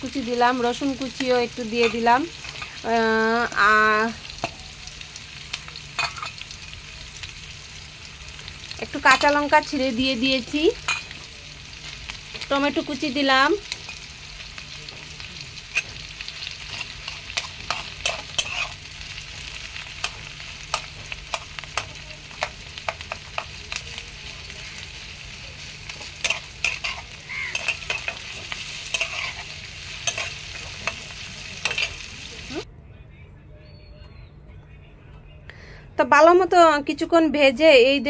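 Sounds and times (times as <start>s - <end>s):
food sizzling in hot oil: 0.0s - 32.7s
spatula scraping a pan: 15.7s - 23.5s, 25.9s - 32.1s.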